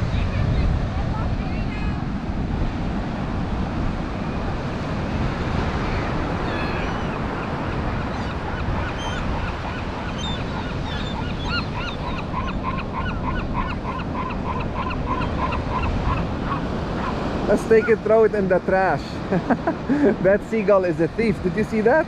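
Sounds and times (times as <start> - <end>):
surf: 0.0 - 22.0
wind: 0.0 - 22.0
seagulls calling: 5.1 - 18.2.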